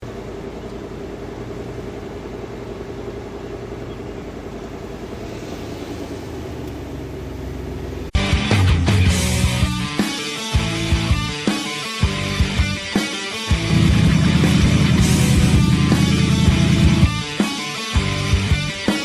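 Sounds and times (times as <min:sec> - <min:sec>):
vehicle engine humming: 0:00.0 - 0:18.9
loud rock music: 0:08.2 - 0:19.0.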